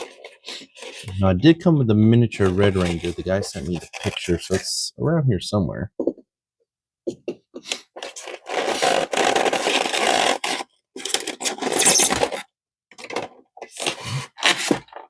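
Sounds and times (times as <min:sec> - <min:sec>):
plastic parts scraping and rustling: 0:00.0 - 0:01.4, 0:02.1 - 0:04.7, 0:10.4 - 0:15.0.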